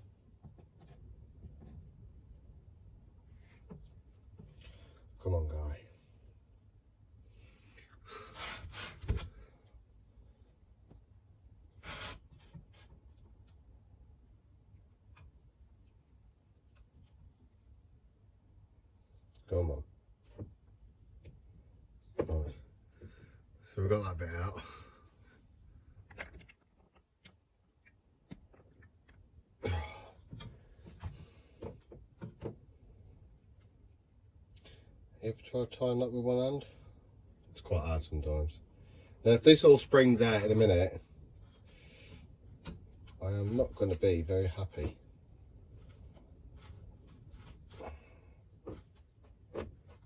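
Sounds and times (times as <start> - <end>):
rubbing and scraping handling noises: 11.7 - 13.7, 40.0 - 50.0
brief rasp of cord: 11.8 - 12.6.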